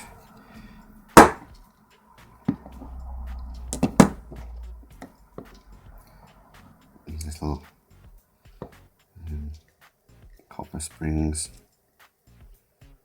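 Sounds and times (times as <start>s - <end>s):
low handling noise: 0.0s - 8.8s.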